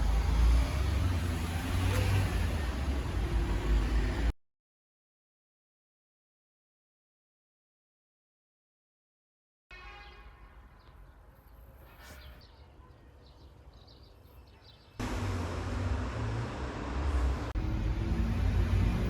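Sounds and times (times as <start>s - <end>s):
road noise: 0.0s - 4.3s, 10.2s - 19.0s
vehicle engine rumble: 0.0s - 4.3s, 15.0s - 19.0s.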